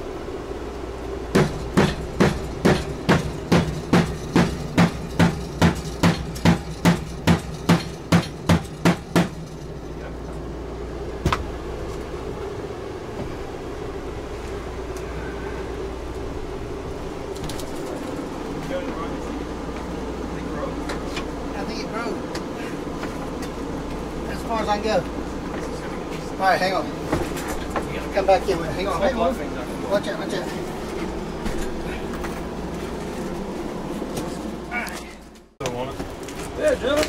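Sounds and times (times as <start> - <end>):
steady low hum: 0.0 - 37.0
hammer strikes: 1.3 - 9.4.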